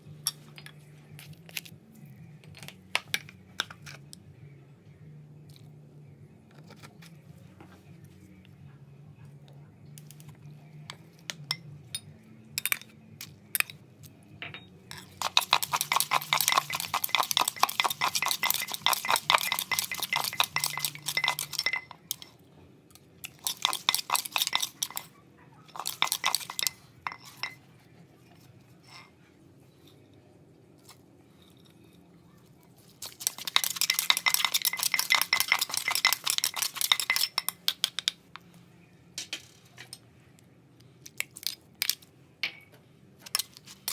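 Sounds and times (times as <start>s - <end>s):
cutlery clinking against a dish: 14.4s - 22.4s, 25.7s - 27.7s, 33.0s - 38.2s.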